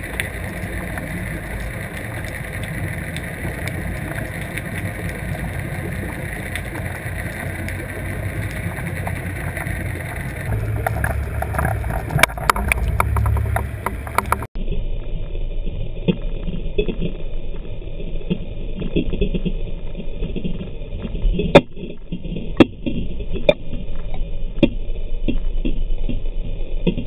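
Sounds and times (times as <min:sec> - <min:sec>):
water and boat rumble: 0:00.0 - 0:27.0
clicks and knocks: 0:08.5 - 0:14.5.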